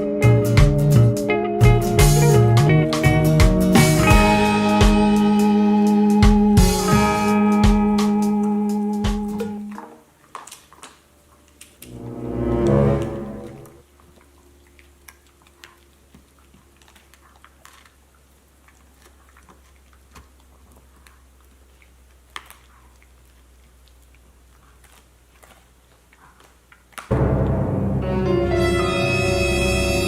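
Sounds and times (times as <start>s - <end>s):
small clicks and crackles: 9.8s - 11.8s, 14.1s - 27.1s
loud eerie music: 11.9s - 13.8s, 27.1s - 30.0s.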